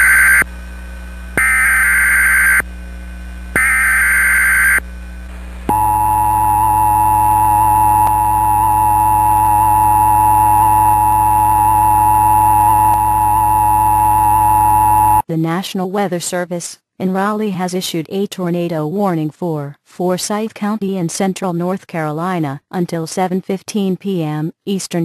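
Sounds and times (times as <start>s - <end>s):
harsh electronic data warble: 0.0s - 0.4s, 1.4s - 2.6s, 3.6s - 4.8s, 5.7s - 15.2s
two-tone alert signal: 5.7s - 15.2s.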